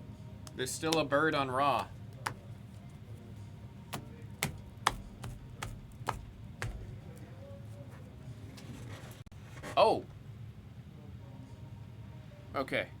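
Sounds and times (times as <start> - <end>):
cards clicking and tapping: 1.8 - 2.5, 4.0 - 7.0.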